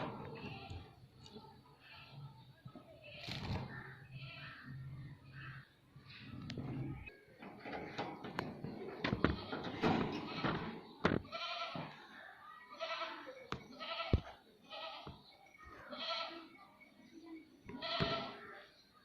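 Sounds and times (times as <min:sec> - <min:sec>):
clicks and knocks: 0:07.4 - 0:11.2.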